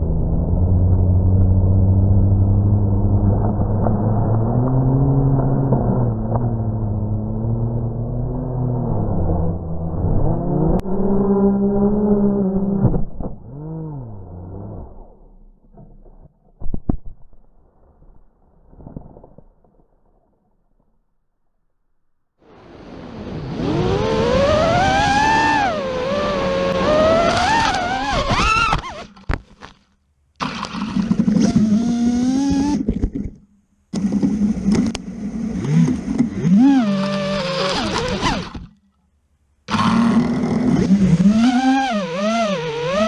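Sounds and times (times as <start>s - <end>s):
drone propellers whining: 22.5s - 29.2s, 34.0s - 38.8s, 39.7s - 43.0s.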